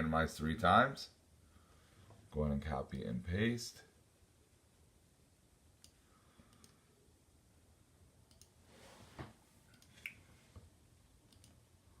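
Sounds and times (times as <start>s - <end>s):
computer mouse clicks: 5.8s - 6.8s, 8.3s - 8.6s, 11.3s - 11.6s
soft rustle: 8.6s - 10.7s.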